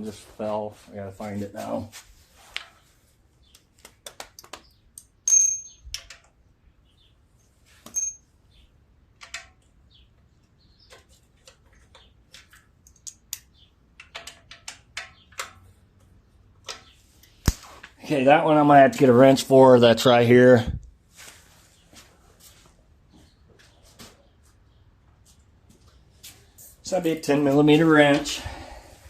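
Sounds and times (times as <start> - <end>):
metal parts and tools clinking: 5.0 - 6.3, 7.4 - 8.3, 10.9 - 15.7.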